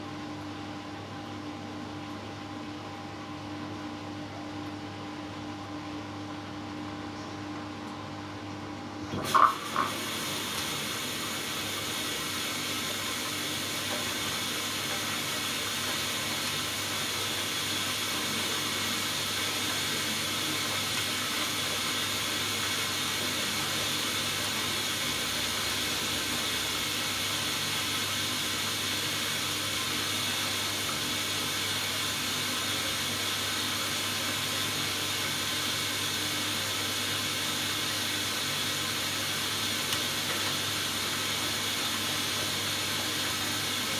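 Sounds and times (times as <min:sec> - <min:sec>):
water running into washing machine: 0:09.1 - 0:43.9.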